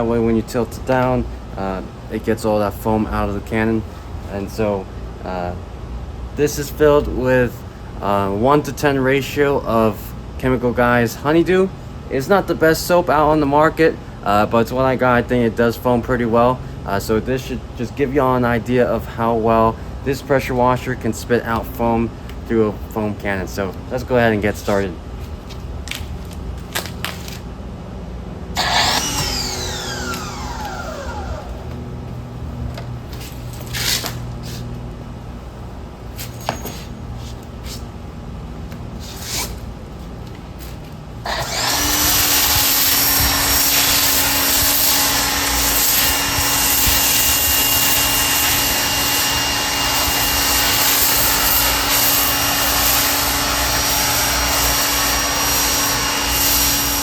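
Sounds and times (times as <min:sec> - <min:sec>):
low hum: 0:28.2 - 0:33.1
electric pressure washer running: 0:28.6 - 0:32.0, 0:41.2 - 0:57.0.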